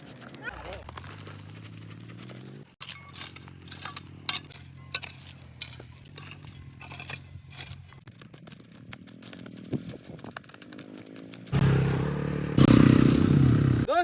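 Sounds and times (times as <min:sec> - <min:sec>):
engine hum: 0:00.0 - 0:13.9
metal tools scraping stones: 0:02.1 - 0:08.1.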